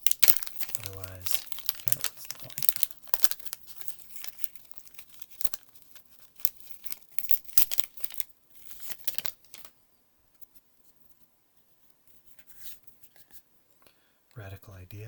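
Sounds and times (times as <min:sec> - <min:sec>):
plastic wrapper tearing and crinkling: 0:00.0 - 0:09.7.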